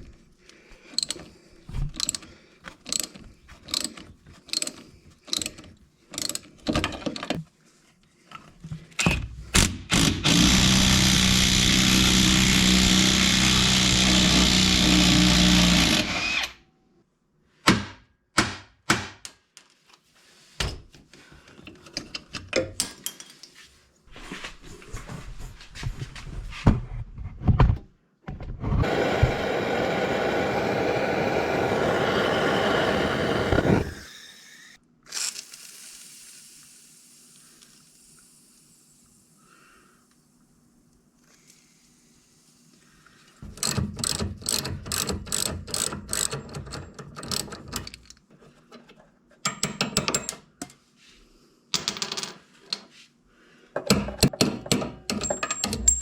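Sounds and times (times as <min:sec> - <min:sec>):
clicks and knocks of tool work: 0:00.7 - 0:07.5, 0:18.4 - 0:23.8, 0:43.4 - 0:50.8, 0:53.8 - 0:56.0
power tool running: 0:09.9 - 0:16.6, 0:28.8 - 0:34.8.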